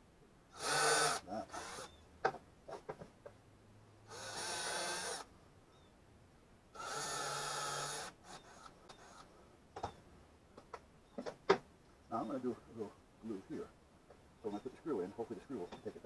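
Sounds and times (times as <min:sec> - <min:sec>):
small power tool bursts: 0:00.6 - 0:02.0, 0:04.1 - 0:05.3.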